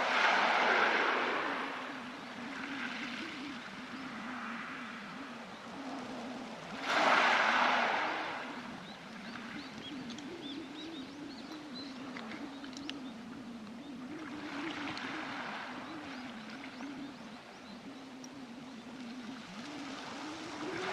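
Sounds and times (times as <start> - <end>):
waves washing over pebbles: 0.0 - 1.8, 6.8 - 8.4.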